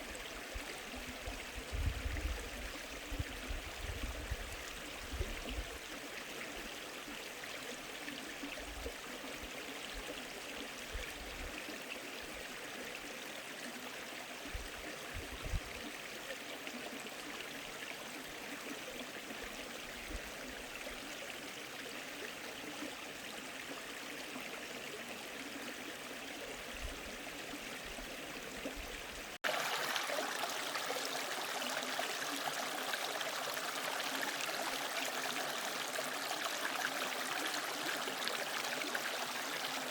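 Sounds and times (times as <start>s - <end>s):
stream rushing over rocks: 29.4s - 39.9s.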